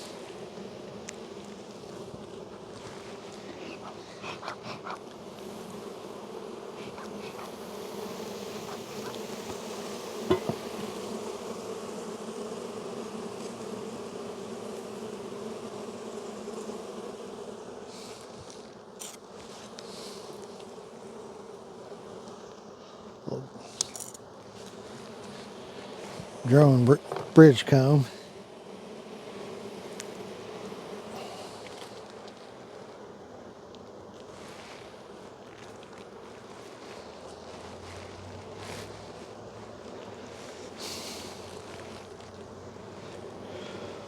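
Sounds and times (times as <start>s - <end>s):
bees buzzing: 0.0s - 44.0s
sharp knocks: 10.3s - 10.8s.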